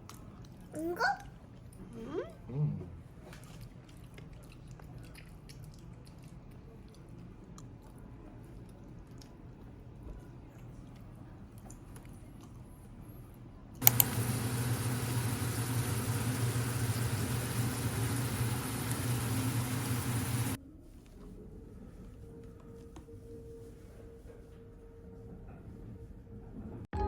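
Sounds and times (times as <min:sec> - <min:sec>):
chewing fried chicken: 0:00.0 - 0:01.8, 0:03.1 - 0:12.6
low hum with hiss: 0:06.9 - 0:26.8.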